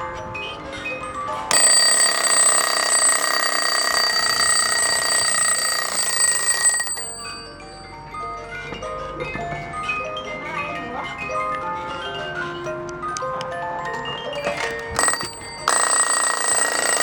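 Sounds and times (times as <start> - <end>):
clock chime melody: 0.7 - 9.2, 13.9 - 17.0
alarm bell ringing: 1.5 - 8.4, 14.7 - 17.0.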